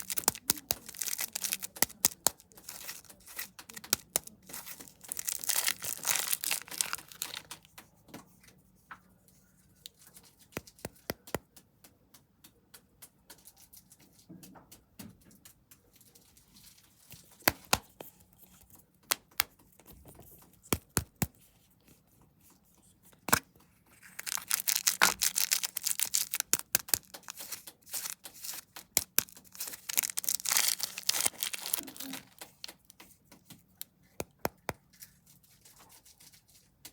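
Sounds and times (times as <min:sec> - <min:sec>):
sharp crackles and clicks: 0:00.0 - 0:07.7, 0:24.0 - 0:33.1
snack wrappers crinkling and tearing: 0:00.0 - 0:07.8, 0:16.2 - 0:19.6, 0:20.3 - 0:21.4, 0:23.2 - 0:35.2.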